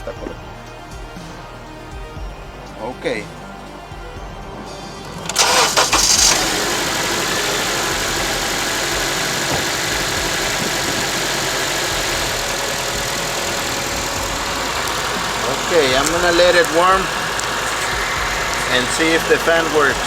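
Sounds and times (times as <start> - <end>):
car engine idling: 4.9 - 20.0
loud jumble of sound: 5.0 - 20.0
steady rushing noise: 8.5 - 20.0.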